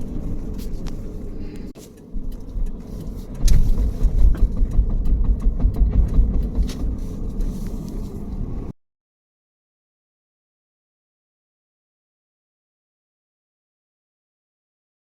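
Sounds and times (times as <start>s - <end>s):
low vehicle rumble: 0.0s - 8.8s
drivetrain knocking: 2.0s - 8.7s.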